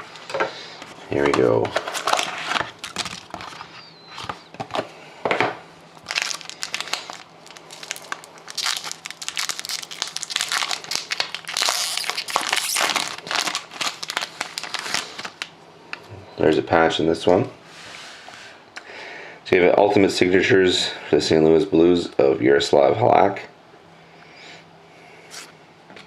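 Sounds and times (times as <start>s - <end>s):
plastic wrapping crinkling and tearing: 1.8s - 4.4s, 6.0s - 15.6s.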